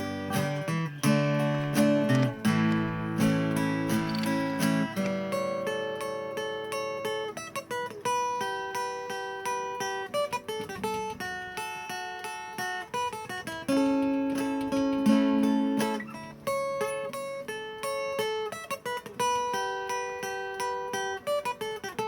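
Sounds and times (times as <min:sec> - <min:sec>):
acoustic guitar plucked and strummed: 0:00.0 - 0:22.0.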